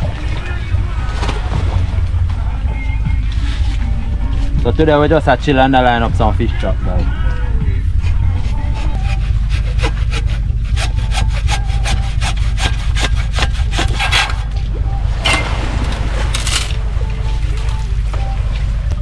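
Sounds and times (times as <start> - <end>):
wind rumble on microphone: 0.0 - 12.5
long scraping strokes: 8.6 - 14.6
hand tool strokes on wood: 9.0 - 14.6.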